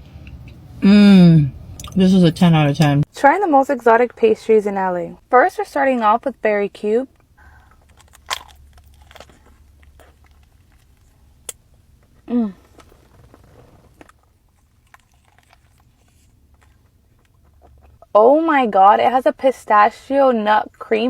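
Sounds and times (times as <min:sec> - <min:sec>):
crunchy pastry chewing: 0:07.4 - 0:18.1.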